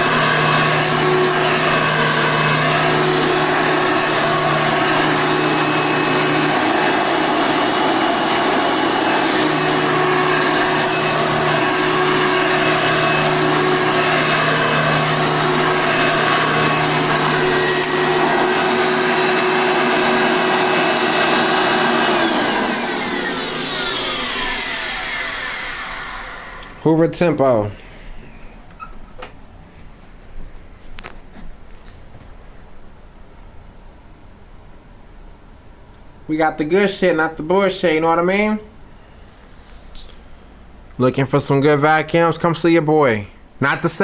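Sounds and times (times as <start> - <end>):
motor whine spinning down: 0.0 - 26.9
vacuum cleaner running: 0.0 - 28.5.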